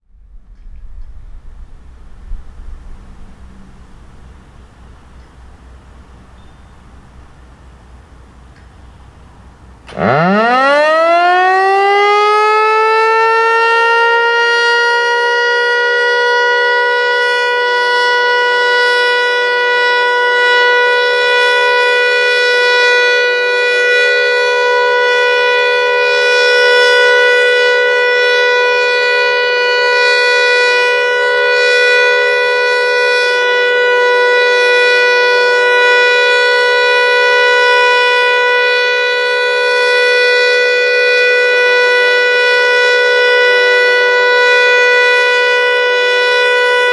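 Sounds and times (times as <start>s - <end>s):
buzzing from siren: 9.9s - 46.9s
warning siren wail: 9.9s - 46.9s.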